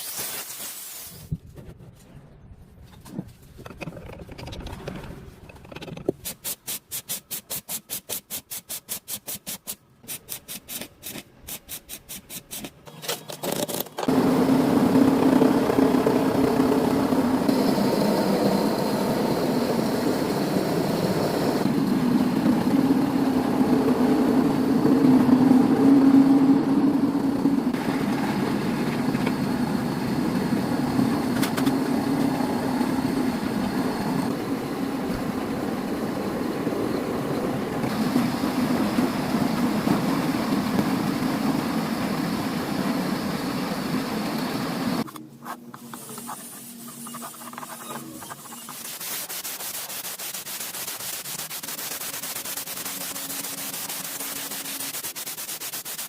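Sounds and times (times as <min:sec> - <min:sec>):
rubbing sound: 0:45.1 - 0:56.0.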